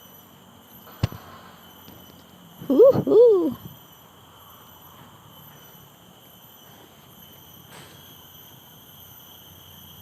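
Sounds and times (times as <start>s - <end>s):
insects droning: 0.0s - 10.0s.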